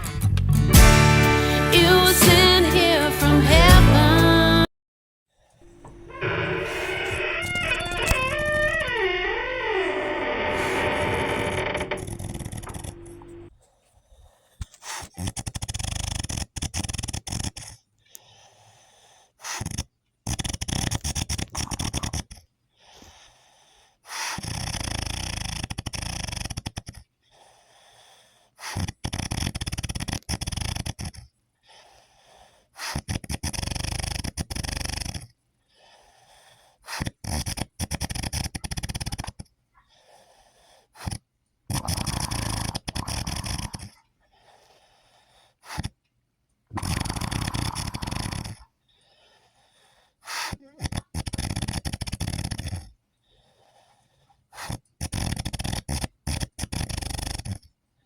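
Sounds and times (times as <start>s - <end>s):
quiet breathing: 5.3s - 20.0s, 20.9s - 46.1s, 46.7s - 55.0s
person snoring loudly: 6.2s - 13.5s, 19.5s - 22.3s, 24.4s - 27.0s, 32.9s - 35.3s, 41.0s - 44.0s, 46.7s - 48.7s, 50.5s - 52.9s, 54.6s - 57.6s.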